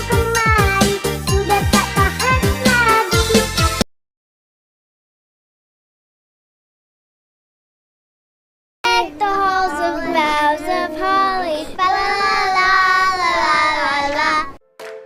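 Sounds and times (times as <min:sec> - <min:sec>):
child singing: 0:00.0 - 0:03.8, 0:08.9 - 0:14.6.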